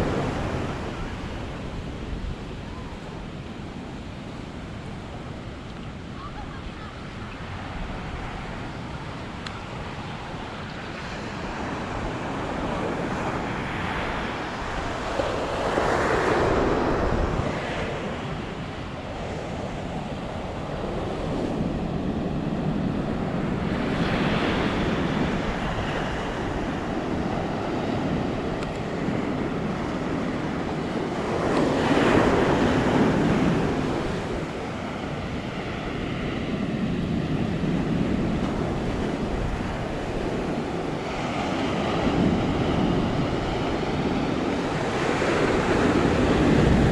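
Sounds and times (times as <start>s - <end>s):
ocean surf breaking: 0.0s - 46.9s.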